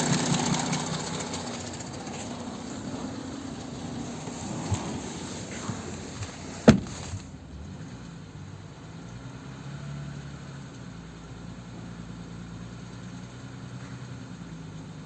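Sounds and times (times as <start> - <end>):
diesel engine idling: 0.0 - 9.1
engine crackling noise: 0.0 - 15.0.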